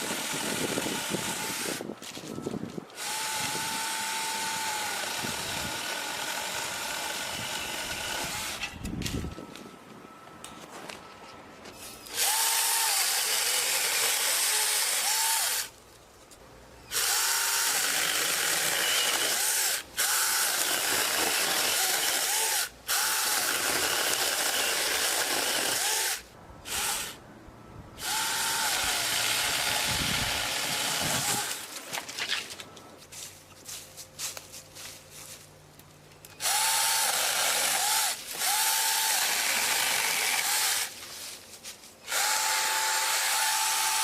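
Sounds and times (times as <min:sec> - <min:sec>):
electric chainsaw cutting wood: 0:00.0 - 0:01.8, 0:03.0 - 0:08.8, 0:12.0 - 0:15.7, 0:16.9 - 0:27.2, 0:28.0 - 0:31.7, 0:36.4 - 0:41.0, 0:42.1 - 0:44.0.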